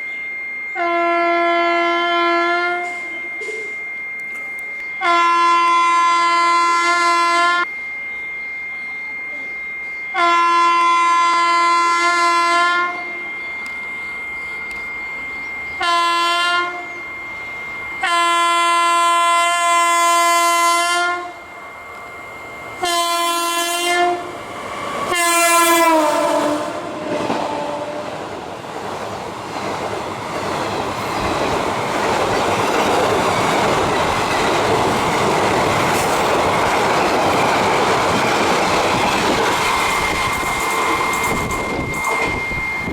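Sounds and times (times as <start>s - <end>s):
locomotive horn blasts: 0.8s - 3.8s, 5.0s - 7.7s, 10.1s - 28.2s
train wheels rumbling on rails: 23.6s - 42.9s.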